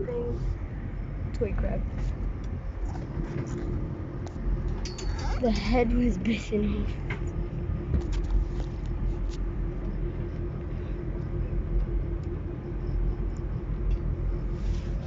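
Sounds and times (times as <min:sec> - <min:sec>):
boat engine rumbling: 0:00.0 - 0:15.0.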